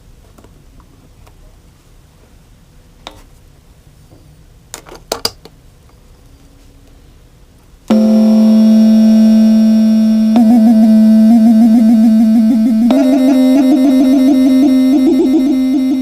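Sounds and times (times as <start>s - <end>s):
buzzy electronic tone: 7.9s - 16.0s.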